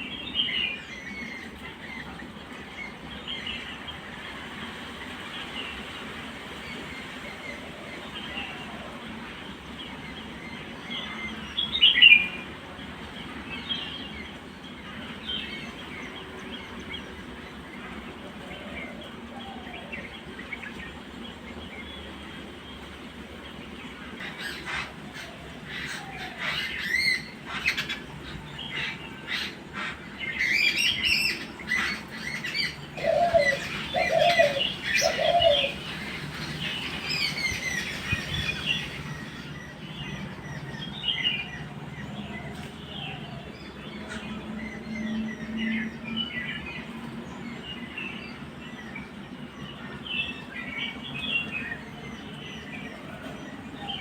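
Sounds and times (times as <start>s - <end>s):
birds chirping and calling: 0.0s - 54.0s
short lower bird calls: 31.2s - 39.8s.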